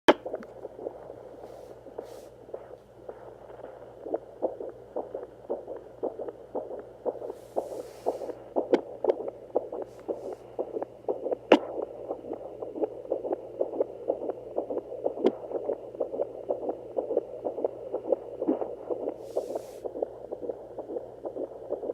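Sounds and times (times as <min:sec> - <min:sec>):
fetal heartbeat thumps: 0:00.1 - 0:21.9
steady low hum: 0:00.1 - 0:21.9.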